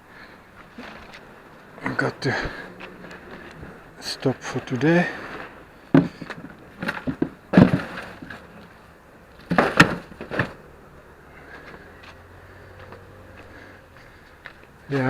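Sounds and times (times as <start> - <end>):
faint steady background: 0.0 - 15.0
sharp knocks and clatters: 4.6 - 10.7.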